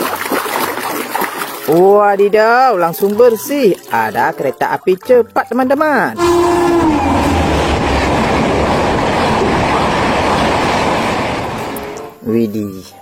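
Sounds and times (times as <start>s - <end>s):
train horn: 6.2s - 9.5s
passing train rumble: 6.2s - 12.3s.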